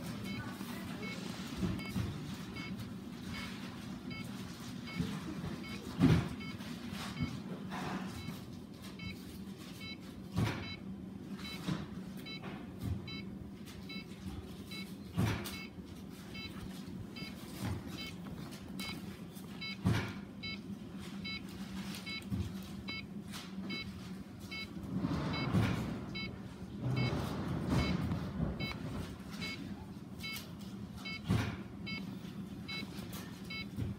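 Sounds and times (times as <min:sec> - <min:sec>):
computer knocking: 0:27.8 - 0:28.0.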